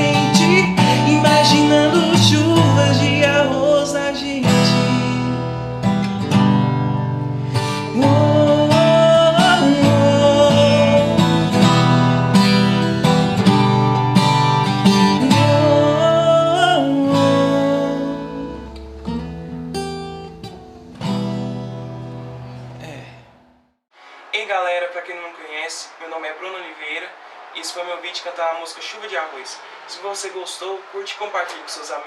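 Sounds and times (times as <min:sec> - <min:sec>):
wordless singing: 0:00.0 - 0:05.8, 0:07.8 - 0:11.6, 0:15.0 - 0:18.8
acoustic guitar strumming: 0:00.0 - 0:23.6.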